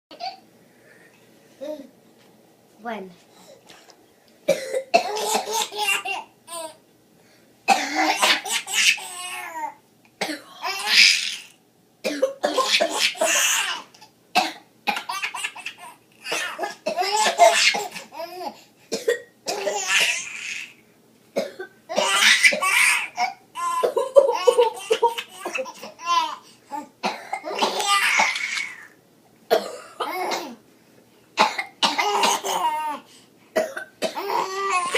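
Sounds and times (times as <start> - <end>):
child coughing: 4.5 - 6.7, 7.7 - 9.3, 12.0 - 13.8, 14.4 - 18.2, 18.9 - 20.3, 21.4 - 28.8, 29.5 - 30.6, 31.4 - 33.0, 33.6 - 34.9
baby laughing: 5.2 - 6.8, 22.0 - 26.9.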